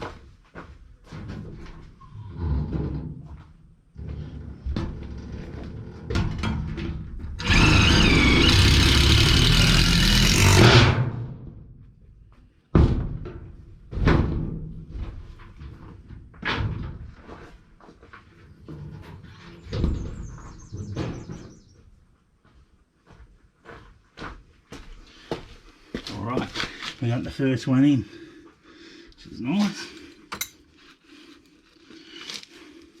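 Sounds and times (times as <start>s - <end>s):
power drill driving a screw: 7.4s - 11.0s.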